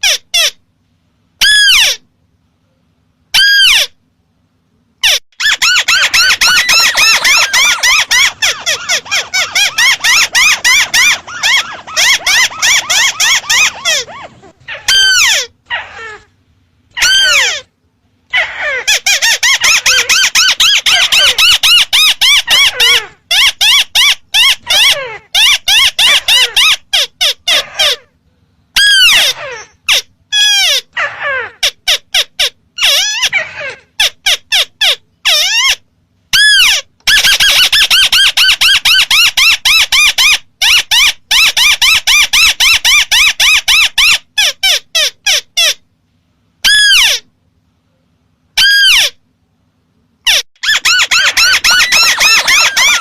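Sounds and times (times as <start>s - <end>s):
bird calling harsh notes: 5.0s - 16.3s, 16.9s - 17.7s, 50.3s - 53.0s.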